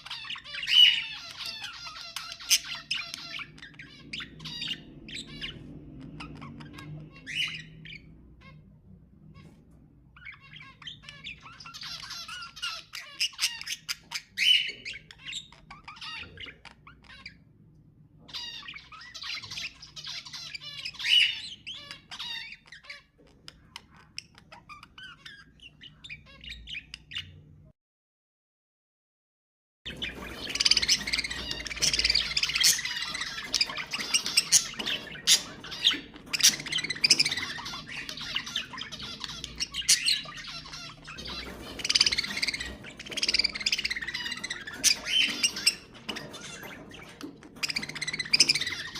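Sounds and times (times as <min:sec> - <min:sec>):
budgerigar squawks: 0:00.0 - 0:05.6, 0:29.9 - 0:48.9
budgerigars warbling and chattering: 0:00.0 - 0:27.7, 0:29.9 - 0:48.9.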